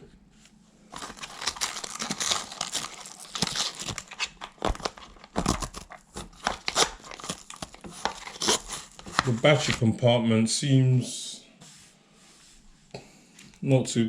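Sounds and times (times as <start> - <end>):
packaging crinkling: 0.9 - 9.9.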